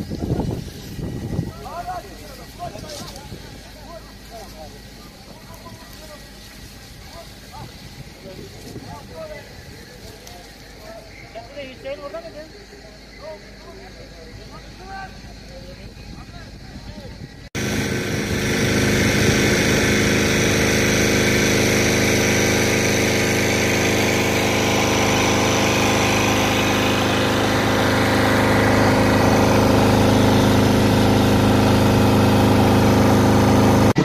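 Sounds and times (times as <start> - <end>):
engine running steadily: 12.6 - 34.0.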